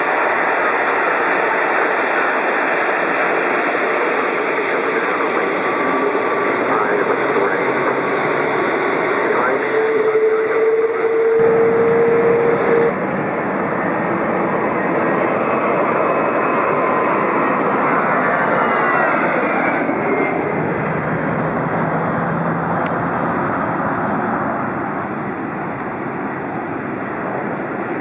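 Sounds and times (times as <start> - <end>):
jet airliner engines roaring: 0.0 - 28.0
steady tone: 4.7 - 13.0.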